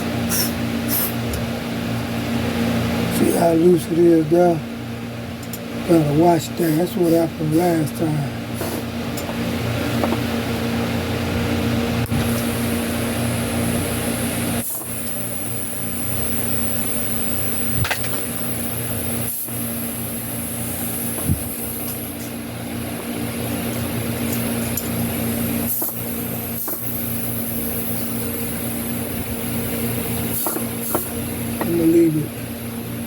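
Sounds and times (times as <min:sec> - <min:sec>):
electric air compressor humming: 0:00.0 - 0:04.4, 0:05.4 - 0:33.0.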